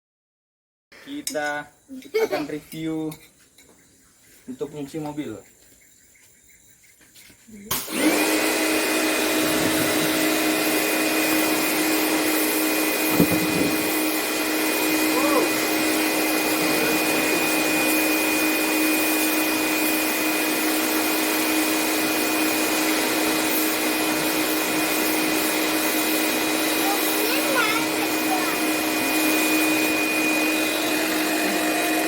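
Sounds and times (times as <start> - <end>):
pressure washer motor whine: 7.7 - 32.0
water jet hissing: 7.7 - 32.0.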